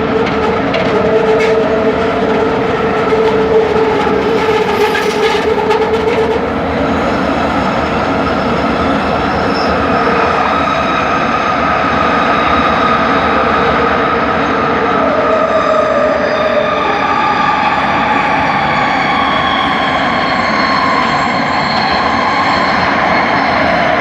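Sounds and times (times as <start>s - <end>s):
train motors whining: 0.0s - 10.1s
train rolling noise: 0.0s - 24.0s.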